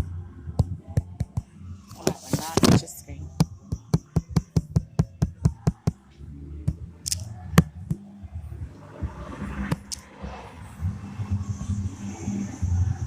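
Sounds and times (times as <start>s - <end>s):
sharp taps: 1.0s - 6.0s.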